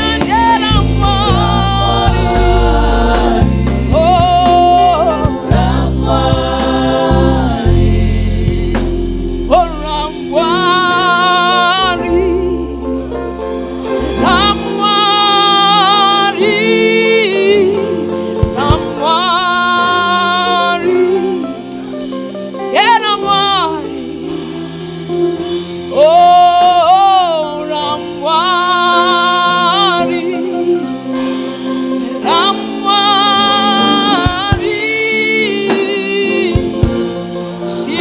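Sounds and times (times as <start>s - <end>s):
choir singing: 0.0s - 38.0s
low instrumental accompaniment: 0.0s - 38.0s.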